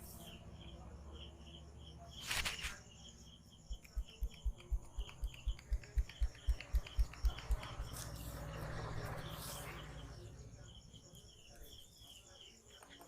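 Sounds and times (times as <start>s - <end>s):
hands patting on head: 3.8s - 7.8s.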